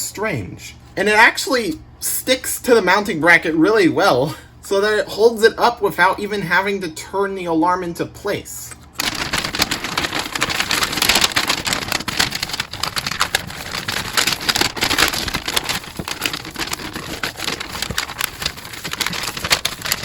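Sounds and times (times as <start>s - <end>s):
plastic crackling and rustling: 8.9s - 20.0s.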